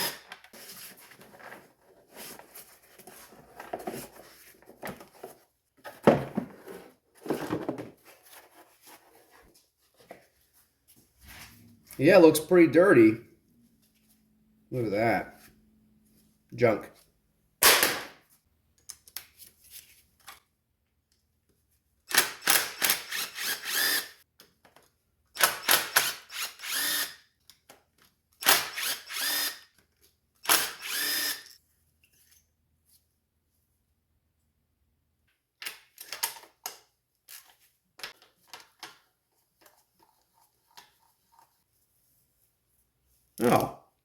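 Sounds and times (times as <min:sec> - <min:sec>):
power tool whirring in bursts: 0:22.3 - 0:24.2, 0:25.8 - 0:27.2, 0:28.5 - 0:29.6, 0:30.5 - 0:31.5.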